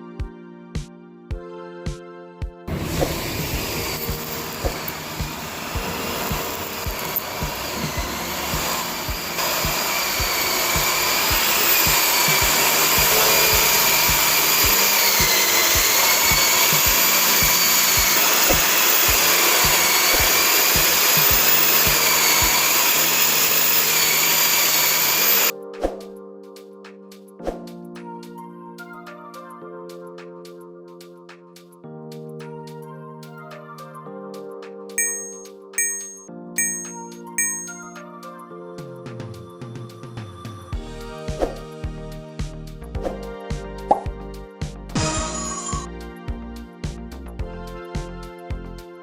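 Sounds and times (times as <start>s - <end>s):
background music with steady beat: 0.0s - 22.8s, 25.4s - 49.0s
power tool motor whining: 3.1s - 25.5s.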